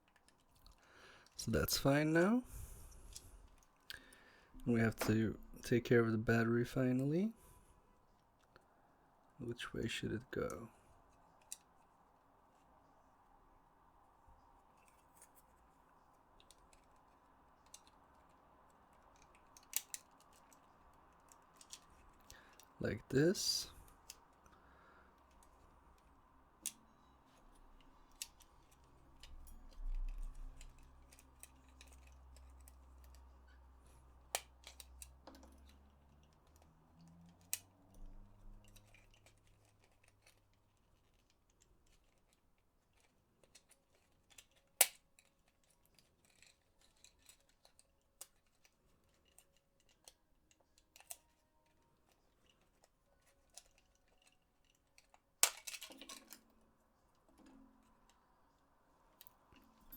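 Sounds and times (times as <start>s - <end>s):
plastic parts clicking: 10.5s - 11.9s, 16.4s - 22.8s, 25.2s - 58.2s.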